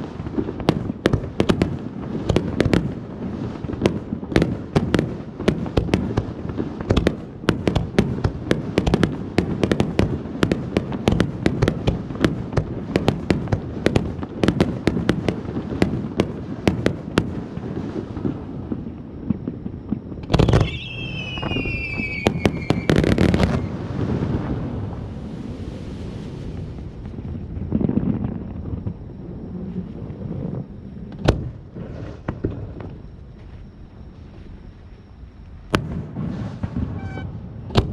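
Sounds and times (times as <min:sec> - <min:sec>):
fireworks crackling pops: 0:00.0 - 0:33.6, 0:34.2 - 0:37.9
firework whistle: 0:19.3 - 0:27.0, 0:35.7 - 0:37.9.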